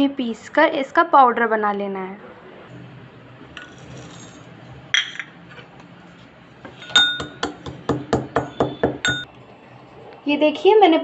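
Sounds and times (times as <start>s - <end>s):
mortar and pestle pounding: 7.0s - 9.3s.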